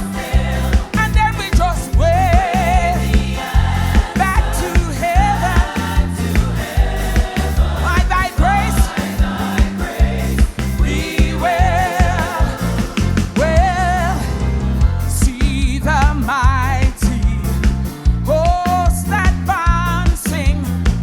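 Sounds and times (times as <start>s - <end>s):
choir singing a hymn in harmony: 0.0s - 14.8s
lead voice singing with vibrato: 0.0s - 17.3s
band with bass and drums: 0.0s - 21.0s.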